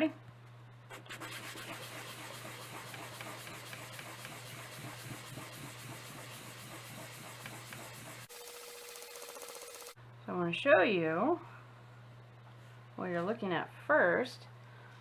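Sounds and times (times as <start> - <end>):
sandpaper rasping: 0.9 - 8.3.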